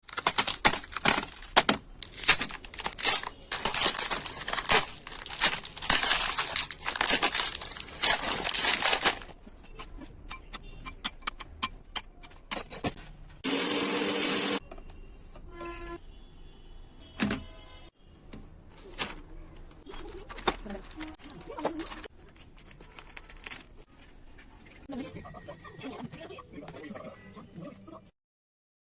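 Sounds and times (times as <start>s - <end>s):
plastic packet crinkling and tearing: 0.0s - 9.4s, 19.8s - 23.8s.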